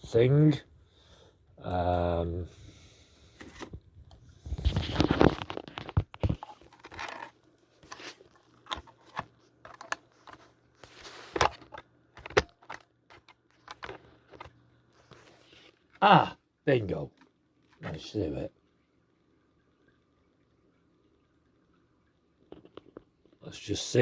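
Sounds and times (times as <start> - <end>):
faint low hum: 0.0 - 24.0
hands handling small parts: 4.6 - 15.7.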